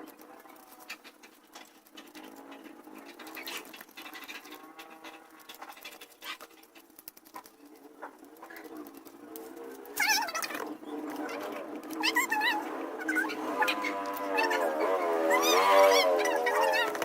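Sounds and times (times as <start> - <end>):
objects being handled: 0.0 - 17.0
faint wavering pitched sounds: 7.4 - 17.0.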